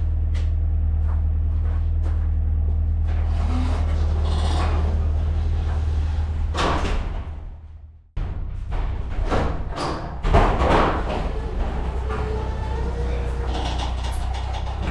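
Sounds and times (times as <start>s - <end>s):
car engine running: 0.0s - 6.6s.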